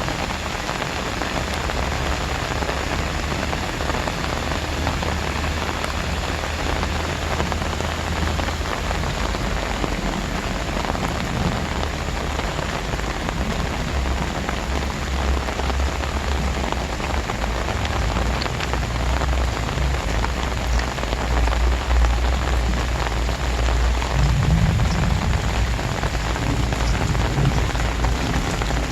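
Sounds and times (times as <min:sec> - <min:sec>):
heavy rain pouring: 0:00.0 - 0:28.9
low rumble: 0:21.3 - 0:28.9.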